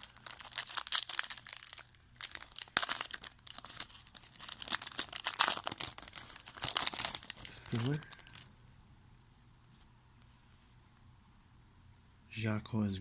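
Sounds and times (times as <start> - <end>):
trading cards crinkling: 0.0 - 8.6.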